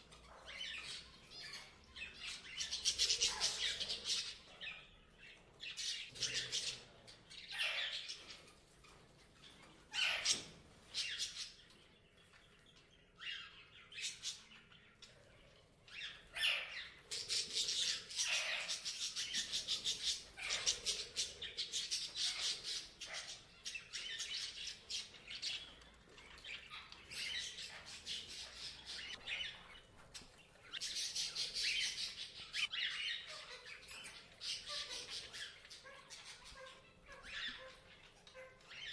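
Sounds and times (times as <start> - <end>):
parrots squawking: 9.9 - 10.4, 16.3 - 24.6.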